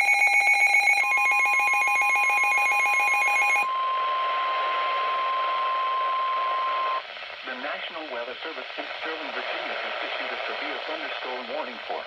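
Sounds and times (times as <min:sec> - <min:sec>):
steady warning alarm tone: 0:00.0 - 0:04.0
radio static hiss: 0:03.8 - 0:12.0.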